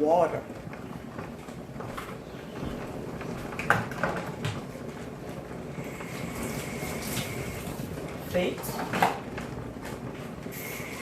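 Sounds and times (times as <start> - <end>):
steady hiss: 5.7 - 8.8, 10.4 - 11.0.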